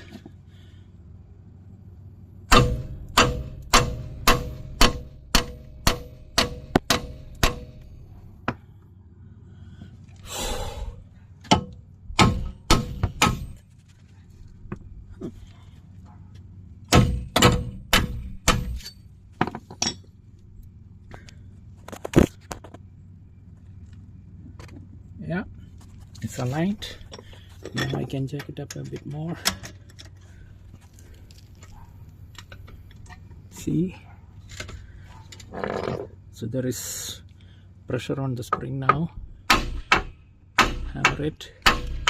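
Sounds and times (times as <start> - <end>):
hammer striking steel: 2.5 - 7.9, 11.5 - 13.6, 16.9 - 19.0, 39.5 - 42.0.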